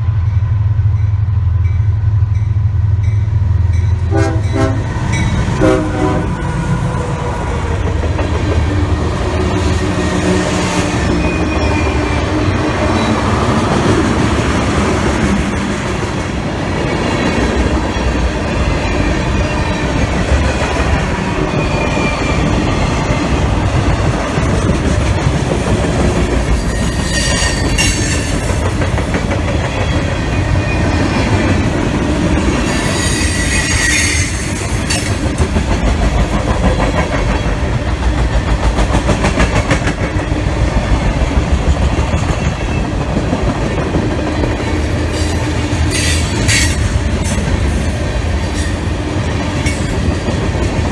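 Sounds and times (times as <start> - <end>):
train wheels rumbling on rails: 0.0 - 50.9
high wheel squeals: 26.5 - 28.7, 32.5 - 35.4, 45.1 - 50.1.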